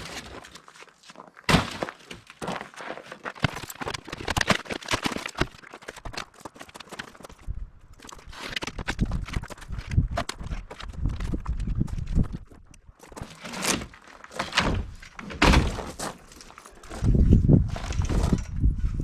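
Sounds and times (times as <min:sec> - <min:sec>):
hard pieces knocking and clattering: 0:03.4 - 0:07.4.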